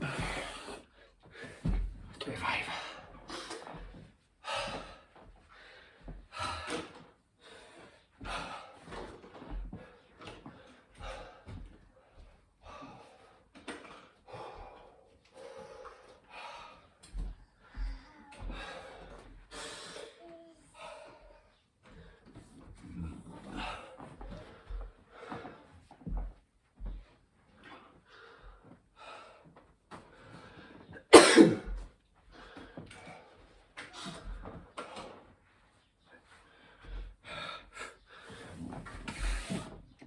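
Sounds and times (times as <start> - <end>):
man breathing hard and gasping: 0.0 - 1.8, 12.6 - 20.2, 36.3 - 39.8.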